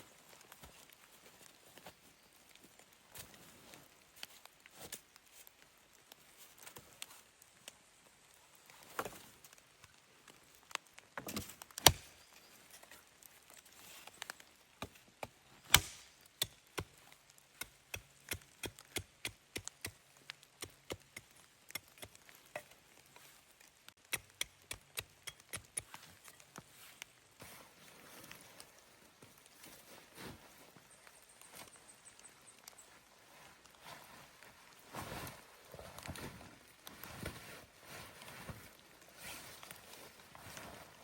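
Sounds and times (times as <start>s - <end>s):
wood being chopped by hand: 11.2s - 12.1s, 15.2s - 17.0s, 17.6s - 20.0s.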